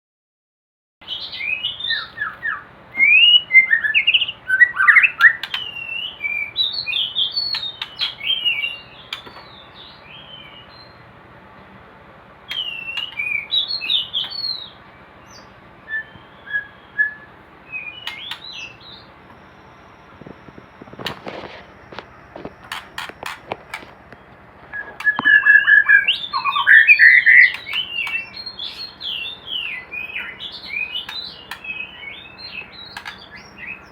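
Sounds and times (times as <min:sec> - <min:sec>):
bird singing whistled phrases: 0:01.0 - 0:11.0, 0:12.5 - 0:19.1, 0:24.7 - 0:33.9
sharp clicks: 0:22.6 - 0:24.2, 0:32.9 - 0:33.2.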